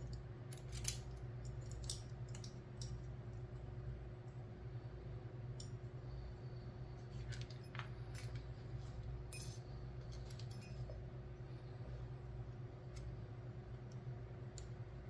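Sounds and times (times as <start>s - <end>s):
steady low hum: 0.0s - 15.0s
small metal lock parts clicking: 0.1s - 3.1s.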